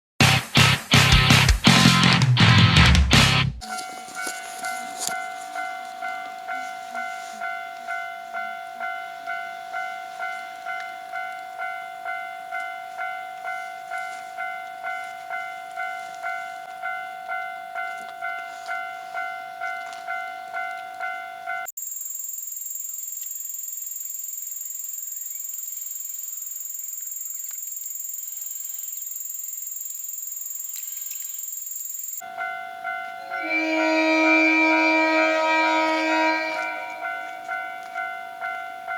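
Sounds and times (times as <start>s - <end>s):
level-crossing warning bell clanging: 3.6s - 21.8s, 32.2s - 38.9s.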